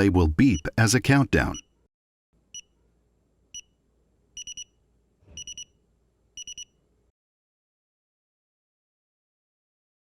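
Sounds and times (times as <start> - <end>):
keypad beeps: 4.4 - 4.7, 5.4 - 5.7, 6.4 - 6.7.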